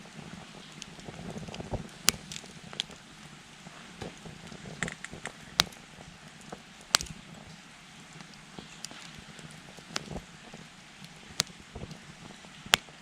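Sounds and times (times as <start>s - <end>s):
wood fire crackling and popping: 0.0s - 13.0s.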